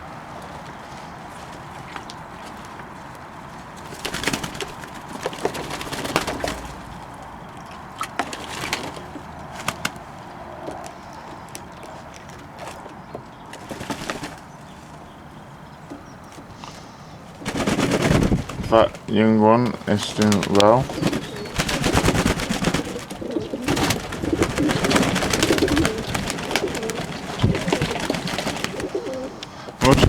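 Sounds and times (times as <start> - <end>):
doves splashing in water: 3.5 - 15.4, 16.4 - 30.0
wings flapping: 3.8 - 7.3, 8.0 - 10.9, 13.5 - 14.6, 16.5 - 30.0.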